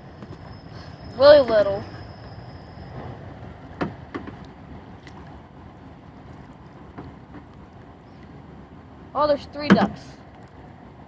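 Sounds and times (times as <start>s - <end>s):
wind: 0.0s - 11.0s.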